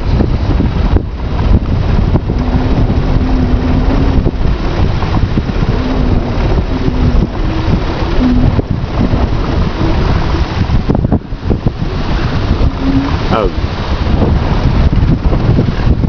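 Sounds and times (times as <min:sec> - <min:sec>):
wind buffeting microphone: 0:00.0 - 0:16.0
wind turbine hum: 0:00.0 - 0:16.0.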